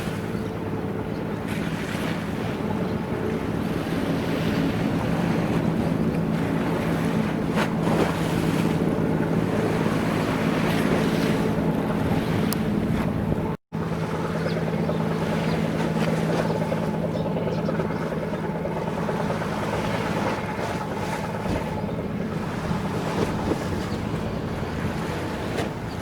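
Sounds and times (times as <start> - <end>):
ship diesel engine drone: 0.0 - 26.0
wind: 0.0 - 26.0
water rushing: 1.6 - 17.1, 17.8 - 26.0.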